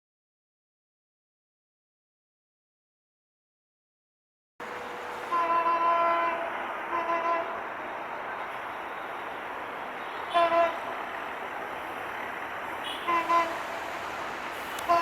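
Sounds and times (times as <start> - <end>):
locomotive horn toots: 4.6 - 7.8, 9.9 - 11.1, 12.8 - 13.8, 14.7 - 15.0
passing train noise: 4.6 - 15.0.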